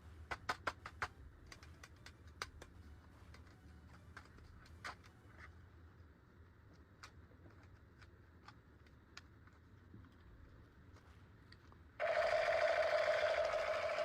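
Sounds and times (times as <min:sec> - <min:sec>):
plastic toy parts clicking: 0:00.3 - 0:05.1, 0:12.1 - 0:14.0
electric toy buzzing: 0:12.0 - 0:14.0.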